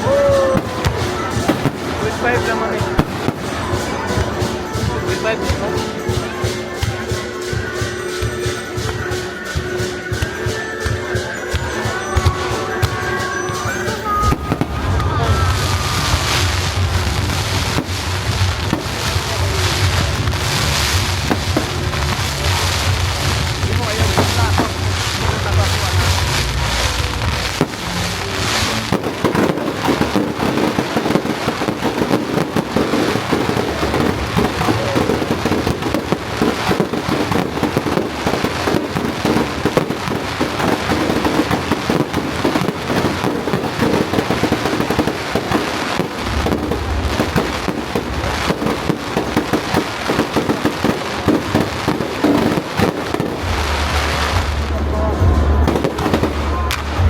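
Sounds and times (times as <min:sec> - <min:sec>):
fireworks crackling and banging: 0:00.0 - 0:57.0.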